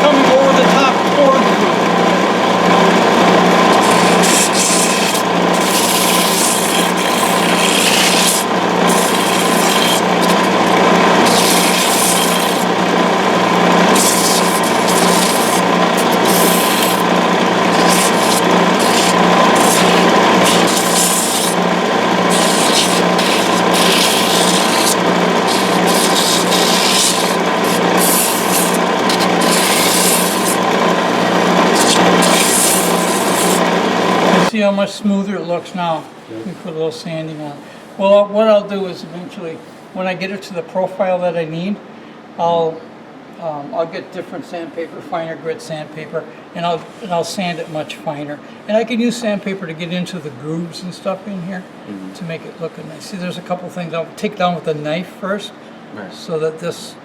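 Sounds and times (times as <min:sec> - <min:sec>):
lathe motor hum: 0:00.0 - 0:34.5
sanding block rasping on wood: 0:03.4 - 0:34.5.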